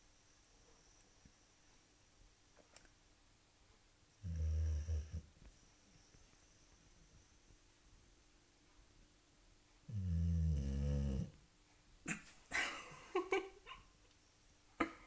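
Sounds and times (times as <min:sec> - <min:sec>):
dog snoring: 0:04.2 - 0:05.3, 0:09.8 - 0:11.4.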